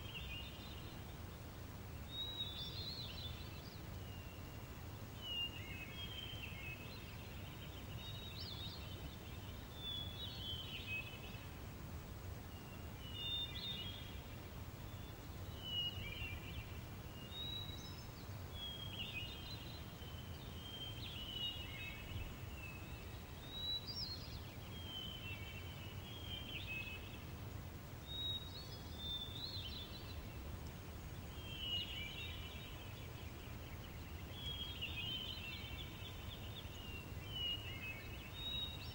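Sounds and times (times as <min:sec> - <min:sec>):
small birds chirping: 0:28.0 - 0:38.9.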